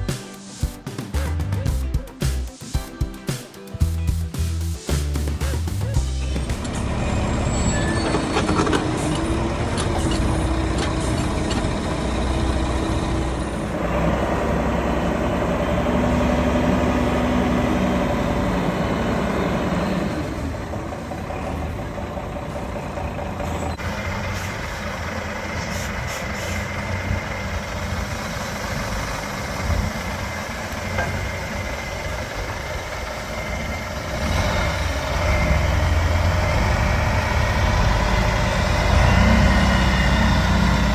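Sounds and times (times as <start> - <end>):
diesel engine idling: 5.5 - 40.9.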